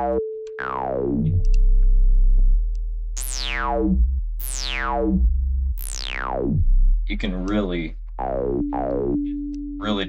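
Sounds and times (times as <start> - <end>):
squelchy synth bass notes: 0.0 - 1.6, 3.2 - 6.9, 8.2 - 9.5.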